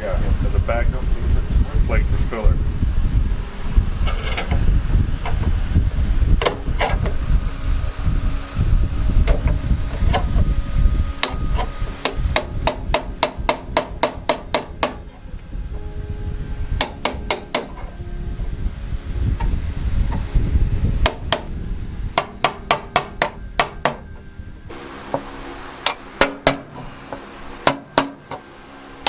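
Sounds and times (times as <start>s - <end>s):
hammer ringing on sheet metal: 11.2s - 15.2s, 16.8s - 18.0s, 21.0s - 21.5s, 22.2s - 24.3s, 26.2s - 28.6s.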